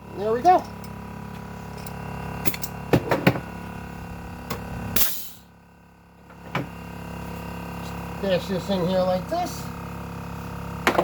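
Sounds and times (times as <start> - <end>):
air compressor humming: 0.0 - 11.0
air hissing: 5.0 - 5.4.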